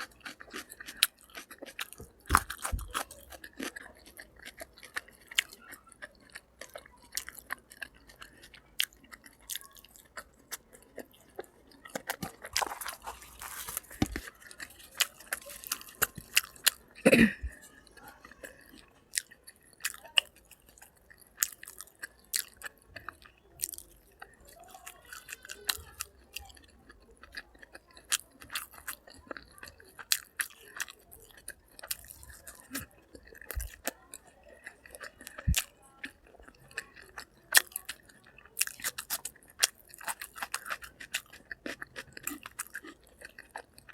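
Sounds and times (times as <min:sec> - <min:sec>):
crunchy bites: 0:00.0 - 0:17.6, 0:25.1 - 0:43.9
person chewing food: 0:00.0 - 0:43.9.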